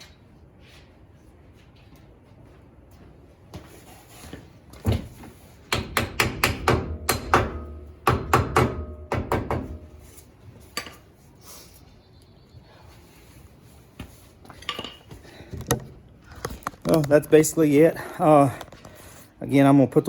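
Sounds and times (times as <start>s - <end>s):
hammer tapping metal: 5.7s - 10.0s.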